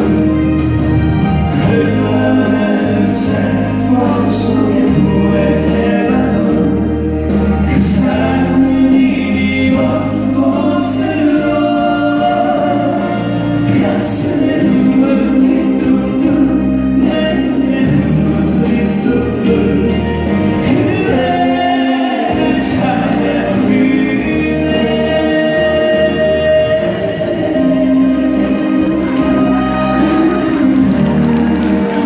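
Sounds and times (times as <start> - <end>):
amplified backing music: 0.0 - 32.0
person singing live: 0.0 - 32.0.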